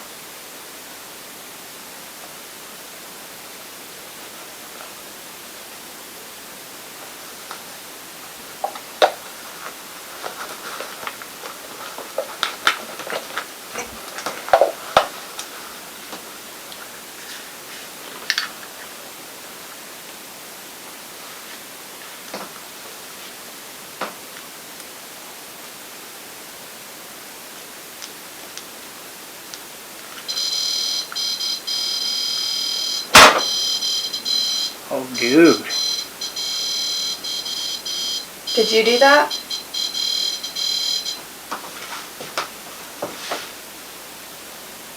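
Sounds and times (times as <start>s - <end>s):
steady hiss: 0.0s - 44.9s
high electronic beeping: 30.3s - 41.2s.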